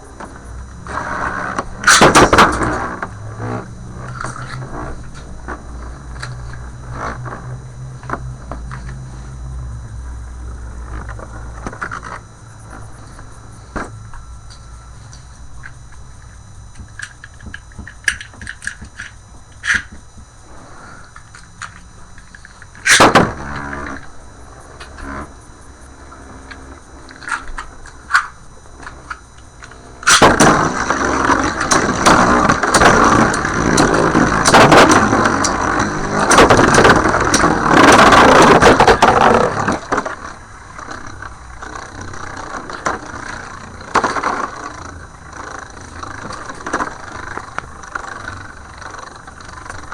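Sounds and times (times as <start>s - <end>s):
spinning tops humming: 0.0s - 49.9s.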